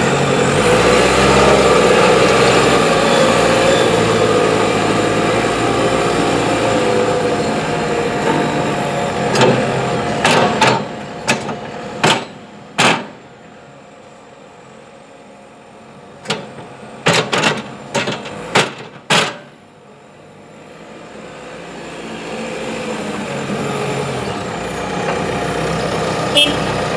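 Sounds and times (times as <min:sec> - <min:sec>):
diesel engine running: 0:00.0 - 0:26.9
sharp clunks and knocks: 0:09.3 - 0:13.2, 0:16.2 - 0:19.5.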